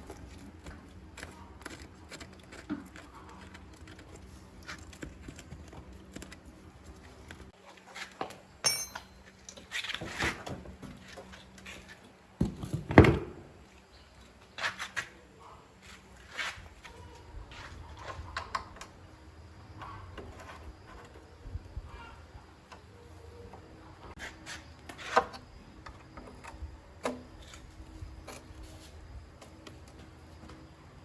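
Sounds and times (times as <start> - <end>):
ringing metal clink: 8.6 - 9.4
tools and metal parts knocking: 8.6 - 9.4.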